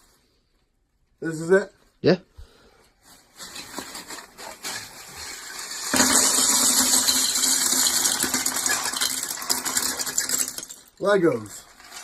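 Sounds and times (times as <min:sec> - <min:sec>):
plastic bricks clattering: 0:03.6 - 0:12.0.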